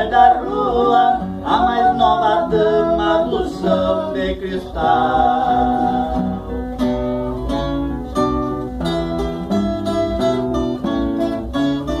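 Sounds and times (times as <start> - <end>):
acoustic guitars plucking melody: 0.0 - 12.0.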